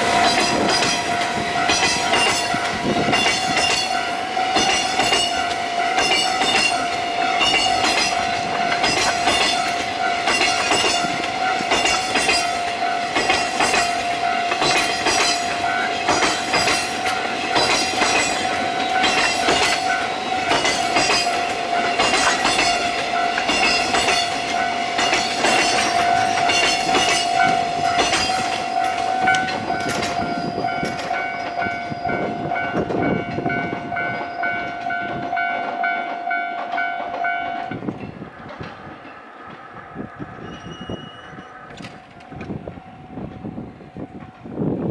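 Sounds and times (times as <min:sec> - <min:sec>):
level crossing warning alarm: 0:00.0 - 0:38.0
train wheels clacking on rails: 0:00.0 - 0:44.9.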